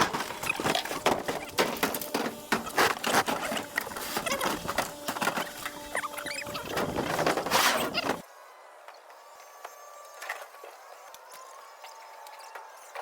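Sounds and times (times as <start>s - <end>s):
short squeaks: 2.8s - 8.2s.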